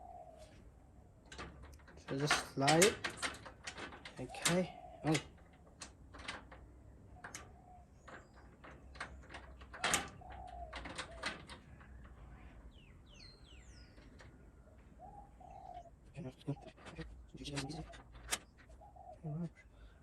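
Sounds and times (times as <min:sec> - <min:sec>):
bird cooing: 0:00.0 - 0:00.6, 0:04.3 - 0:05.3, 0:09.5 - 0:12.0, 0:15.0 - 0:20.0
metal lock parts clicking: 0:01.2 - 0:12.2, 0:16.5 - 0:18.8.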